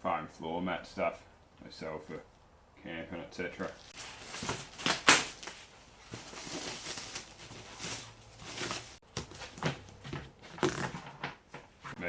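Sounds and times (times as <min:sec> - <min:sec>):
foam mat rustling: 0:03.6 - 0:12.0.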